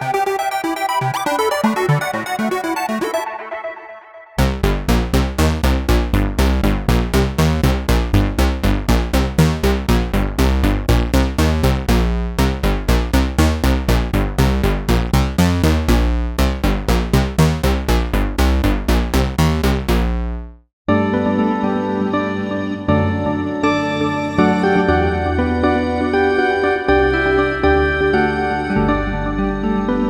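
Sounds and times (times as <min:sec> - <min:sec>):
sustained synth sound: 0:00.0 - 0:04.6
synthesizer arpeggio: 0:00.0 - 0:19.6, 0:20.9 - 0:30.0
steady synth bass: 0:00.0 - 0:20.7, 0:22.9 - 0:30.0.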